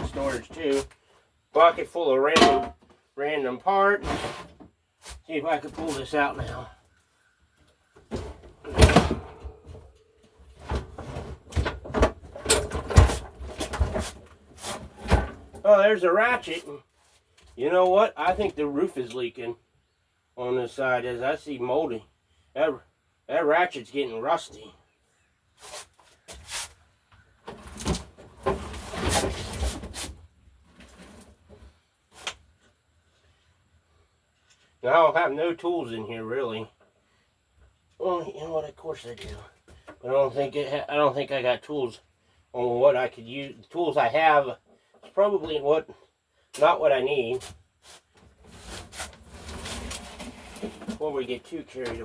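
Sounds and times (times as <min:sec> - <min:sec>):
scraping and rattling of junk: 0:02.3 - 0:02.9, 0:48.4 - 0:51.1.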